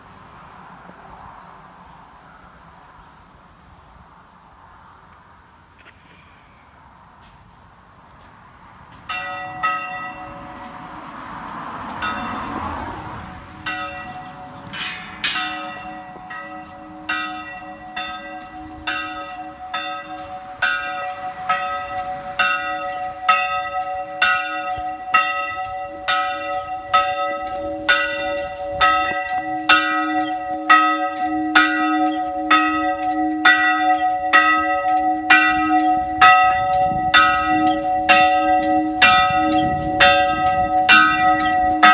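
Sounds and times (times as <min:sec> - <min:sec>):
church bell ringing: 0:09.1 - 0:41.9.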